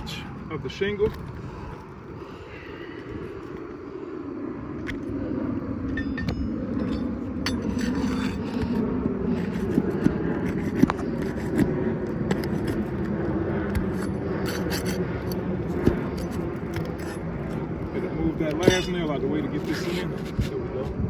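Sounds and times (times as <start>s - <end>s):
steady low rumble: 0.0s - 21.0s
shingle scraping against shingles: 7.0s - 20.9s.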